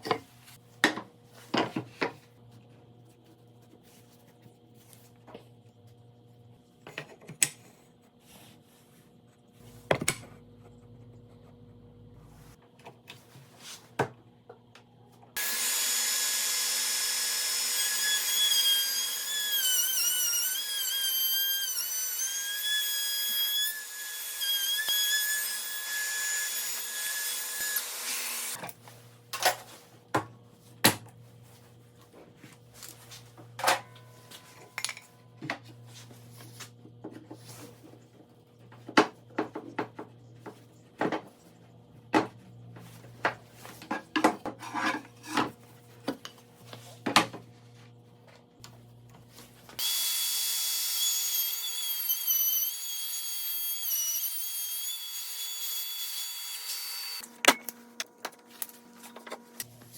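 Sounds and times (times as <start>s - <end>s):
wood router high whine: 15.4s - 28.6s, 49.8s - 57.2s.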